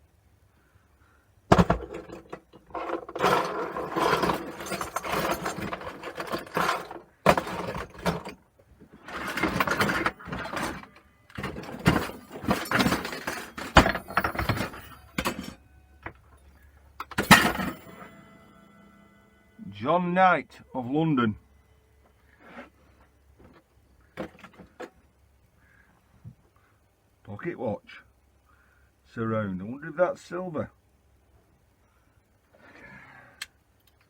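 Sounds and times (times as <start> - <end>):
metal clock parts clattering: 1.5 - 15.6, 17.0 - 19.0.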